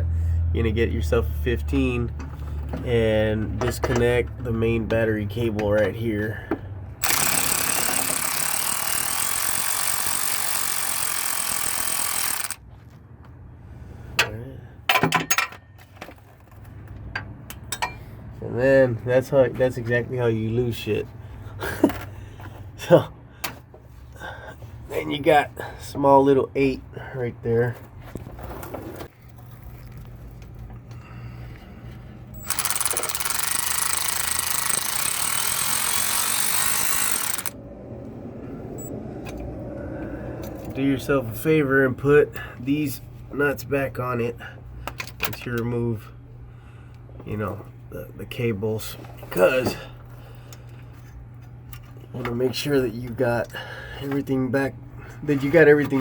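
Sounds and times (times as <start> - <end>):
power tool rattling buzz: 7.0 - 12.6, 32.4 - 37.6
ratchet wrench running: 7.0 - 12.6, 32.4 - 37.6.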